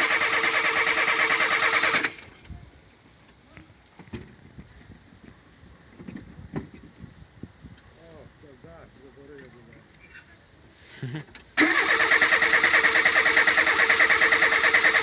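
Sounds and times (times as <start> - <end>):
starter motor cranking engine: 0.0 - 2.3, 11.6 - 15.0.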